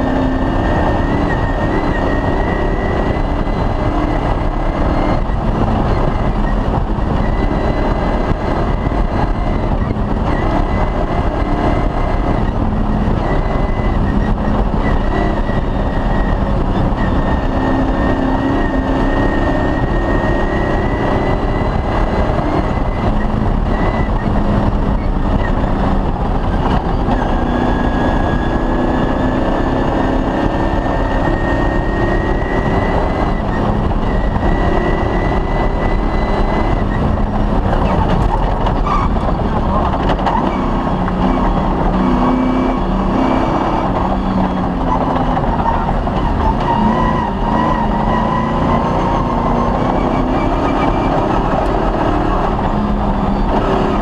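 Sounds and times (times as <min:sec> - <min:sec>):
rally car engine revving: 0:00.0 - 0:54.0.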